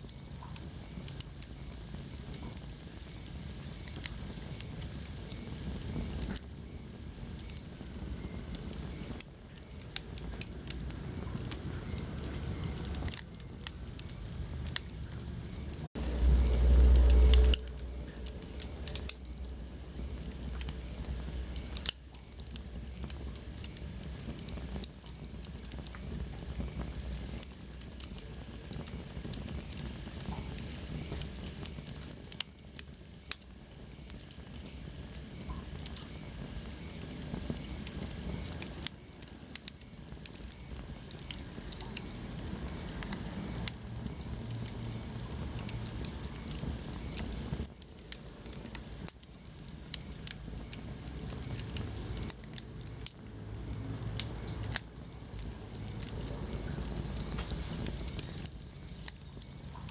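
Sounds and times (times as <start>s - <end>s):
soft hiss: 0.0s - 59.9s
wood fire crackling and popping: 0.0s - 59.9s
loud low rumble: 14.6s - 21.2s.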